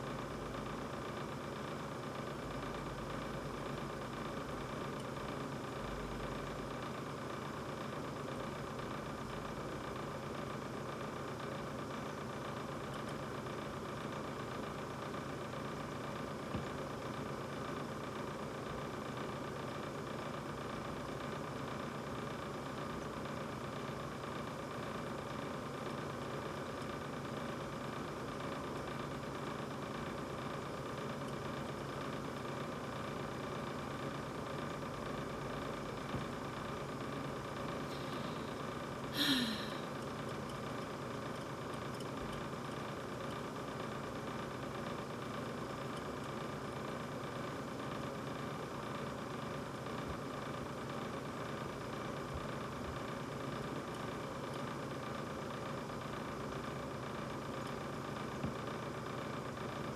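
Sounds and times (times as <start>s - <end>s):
refrigerator humming: 35.2s - 40.0s.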